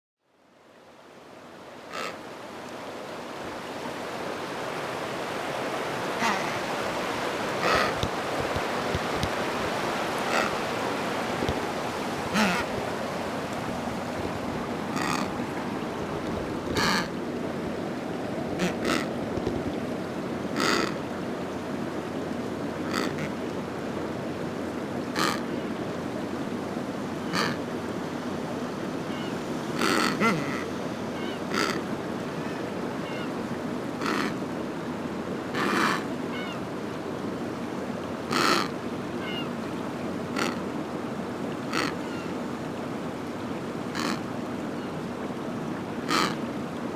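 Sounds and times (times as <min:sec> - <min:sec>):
surf washing: 0:00.6 - 0:46.9
penguin squawks: 0:06.2 - 0:06.7, 0:07.6 - 0:08.0, 0:10.3 - 0:10.6, 0:12.3 - 0:12.7, 0:15.0 - 0:15.3, 0:16.8 - 0:17.1, 0:18.6 - 0:19.1, 0:25.2 - 0:25.4, 0:27.3 - 0:27.6, 0:29.8 - 0:31.8, 0:34.0 - 0:34.3, 0:35.6 - 0:36.0, 0:38.3 - 0:38.7, 0:41.7 - 0:42.2, 0:44.0 - 0:44.2, 0:46.1 - 0:46.4
penguins squawking: 0:06.2 - 0:06.7, 0:07.6 - 0:08.1, 0:12.3 - 0:12.7, 0:15.0 - 0:15.3, 0:16.8 - 0:17.1, 0:29.8 - 0:30.7.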